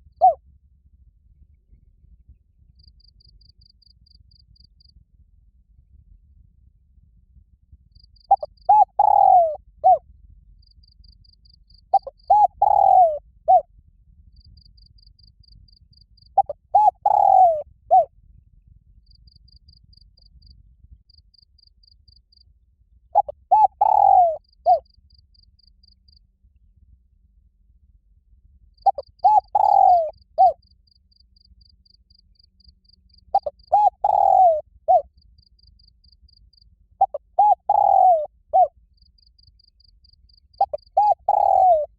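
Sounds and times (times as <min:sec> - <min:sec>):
dove cooing: 0:00.0 - 0:00.4, 0:08.3 - 0:10.0, 0:11.9 - 0:13.6, 0:16.4 - 0:18.1, 0:23.2 - 0:24.8, 0:28.8 - 0:30.6, 0:33.3 - 0:35.1, 0:37.0 - 0:38.7, 0:40.6 - 0:41.9
faint pulsing insect trill: 0:00.0 - 0:41.9.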